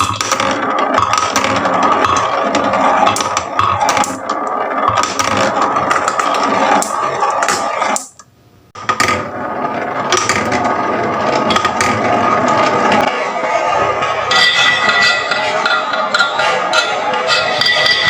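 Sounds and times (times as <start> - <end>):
marbles rattling down wooden track: 0.0 - 8.1.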